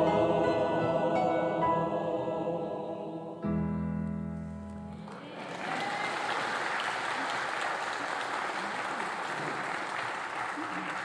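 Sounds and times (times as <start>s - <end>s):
choir singing: 0.0s - 3.7s
audience applauding: 5.0s - 11.0s.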